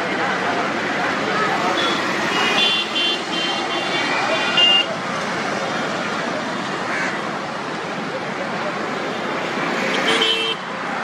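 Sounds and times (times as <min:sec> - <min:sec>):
road traffic rushing: 0:00.0 - 0:11.0.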